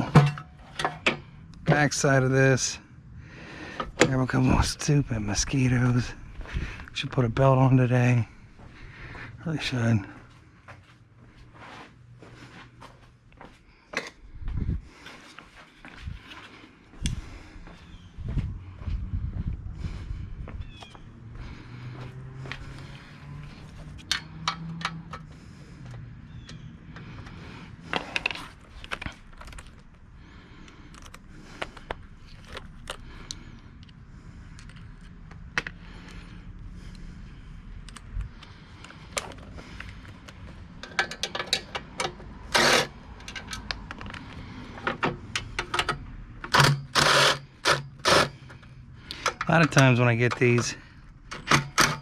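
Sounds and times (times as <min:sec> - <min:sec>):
metal tools and parts clinking: 0:00.0 - 0:01.2, 0:40.8 - 0:44.2, 0:44.8 - 0:52.0.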